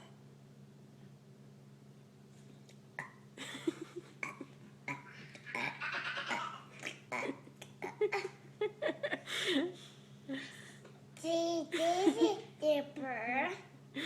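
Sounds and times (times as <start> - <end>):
steady low hum: 0.0 - 14.0
little boy burping: 4.2 - 8.4.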